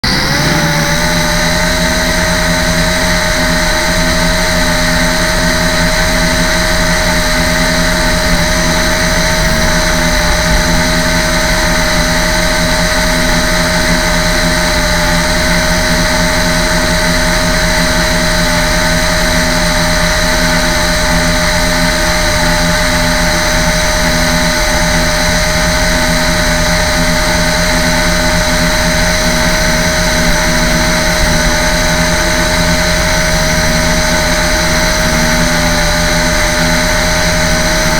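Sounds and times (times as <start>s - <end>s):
drone motors and propellers whining: 0.0s - 37.9s.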